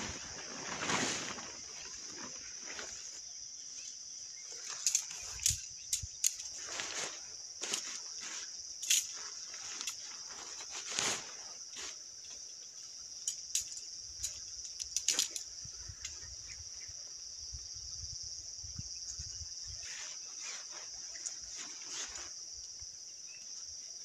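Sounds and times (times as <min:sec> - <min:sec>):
night insects chirping: 0:00.0 - 0:24.0
sharp clicks and rustles: 0:04.6 - 0:06.9, 0:08.8 - 0:10.1, 0:13.2 - 0:16.2.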